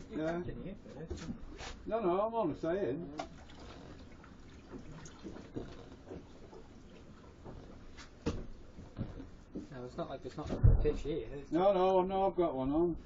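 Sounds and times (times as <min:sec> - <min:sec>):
water lapping against boat hull: 0:03.2 - 0:09.6.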